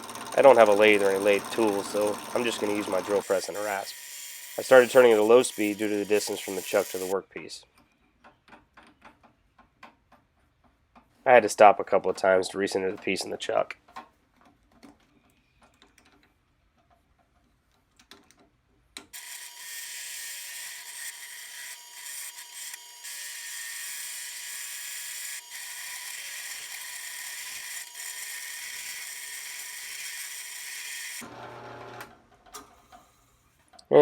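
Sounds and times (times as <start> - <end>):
rasp scraping spinning wood: 0.0 - 7.1.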